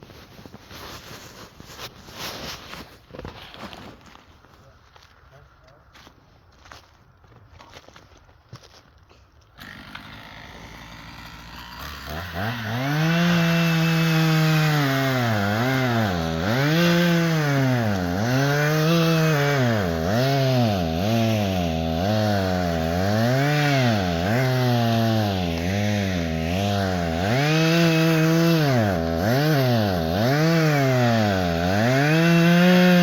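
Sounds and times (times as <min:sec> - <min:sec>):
chainsaw cutting wood: 0:09.5 - 0:33.0.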